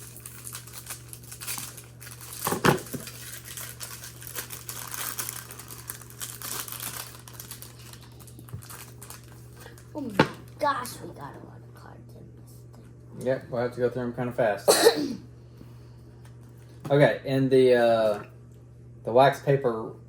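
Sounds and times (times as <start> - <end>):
plastic wrapper crinkling and tearing: 0.0 - 10.0.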